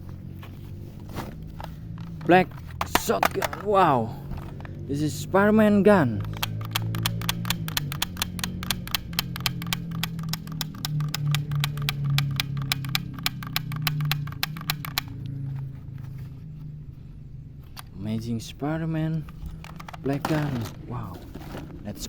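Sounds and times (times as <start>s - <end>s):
low electronic hum: 0.0s - 22.0s
toy gun rapid clicking: 2.8s - 3.7s, 6.0s - 15.2s, 19.6s - 20.6s.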